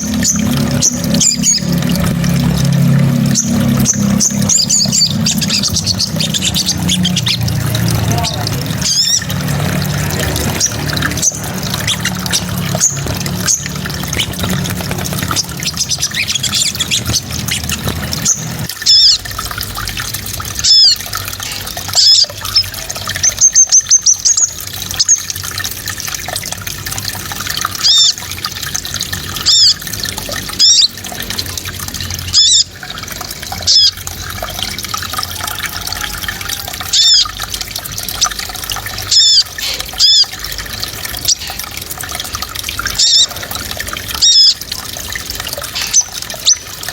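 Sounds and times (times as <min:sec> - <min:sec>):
bird trill: 0:00.0 - 0:09.4, 0:10.2 - 0:19.2, 0:20.6 - 0:25.3, 0:27.8 - 0:28.2, 0:29.4 - 0:29.8, 0:30.6 - 0:31.0, 0:32.2 - 0:33.0, 0:33.6 - 0:34.0, 0:35.2 - 0:37.4, 0:39.0 - 0:40.3, 0:43.0 - 0:43.4, 0:44.2 - 0:44.6, 0:45.7 - 0:46.7.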